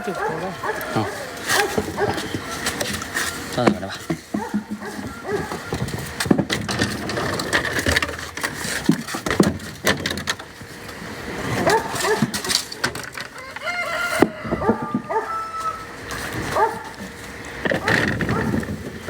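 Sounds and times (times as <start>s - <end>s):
whining animal calls: 0.0s - 6.1s, 13.4s - 17.0s, 17.8s - 18.7s
rustling and knocking of peaches: 0.0s - 19.0s.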